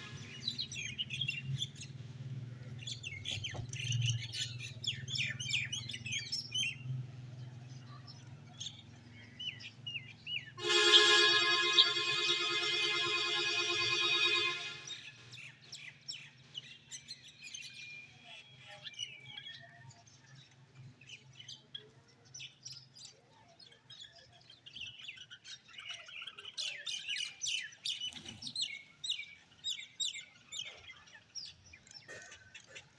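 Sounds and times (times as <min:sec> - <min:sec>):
birds chirping and calling: 0:00.0 - 0:23.3, 0:23.9 - 0:32.9
held musical tone: 0:10.6 - 0:15.0.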